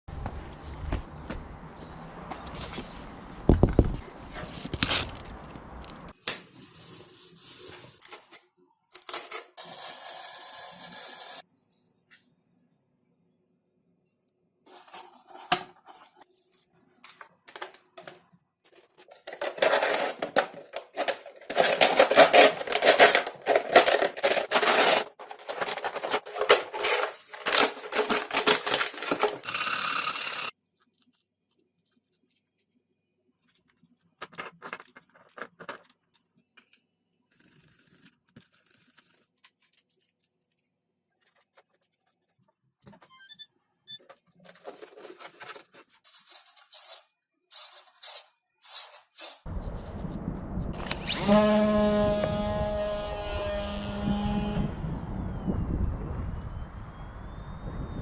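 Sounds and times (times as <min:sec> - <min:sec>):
cutting and scraping materials: 0:09.1 - 0:11.5, 0:18.7 - 0:31.0, 0:37.3 - 0:40.2, 0:50.9 - 0:54.7.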